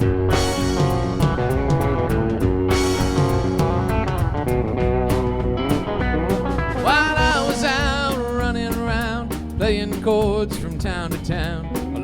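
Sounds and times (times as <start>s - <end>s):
drum kit beat: 0.0s - 12.0s
electric guitar: 0.0s - 12.0s
person singing: 6.8s - 12.0s.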